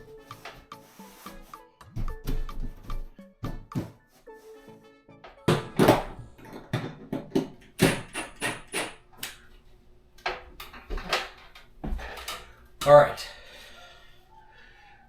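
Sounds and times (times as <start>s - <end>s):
hammer driving nails: 5.5s - 9.4s.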